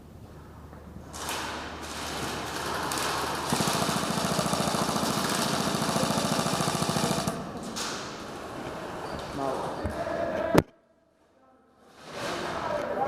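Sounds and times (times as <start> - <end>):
airsoft guns firing full auto: 1.1 - 7.6.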